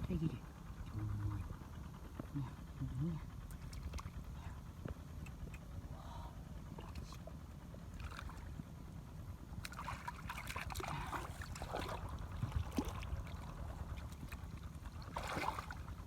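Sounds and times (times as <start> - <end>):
low rumble: 0.0 - 16.0
muddy water splashing: 9.6 - 16.0.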